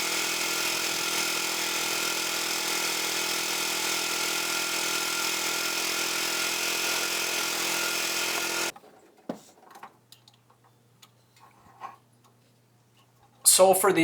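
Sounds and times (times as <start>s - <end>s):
sawmill engine running: 0.0s - 8.7s
faint clicks and knocks: 8.7s - 13.4s.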